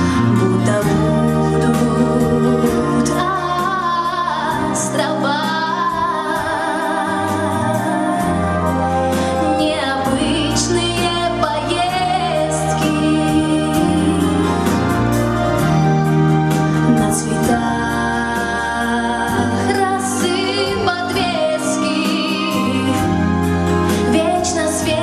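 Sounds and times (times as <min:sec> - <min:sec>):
woman singing pop song: 0:00.0 - 0:15.2, 0:16.8 - 0:25.0
bass and steady beat: 0:00.0 - 0:21.6.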